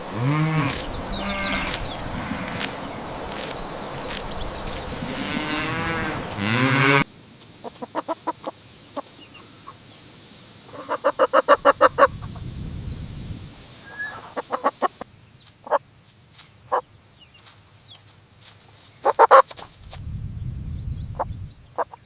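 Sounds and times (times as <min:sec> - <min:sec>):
chickens clucking: 0:00.0 - 0:09.9, 0:10.7 - 0:12.5, 0:13.9 - 0:15.8, 0:19.0 - 0:19.7
low rumble: 0:19.8 - 0:21.6.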